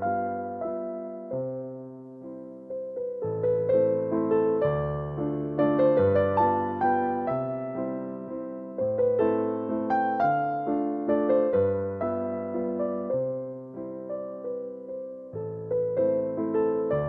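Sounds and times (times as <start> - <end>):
gentle piano music: 0.0 - 17.0.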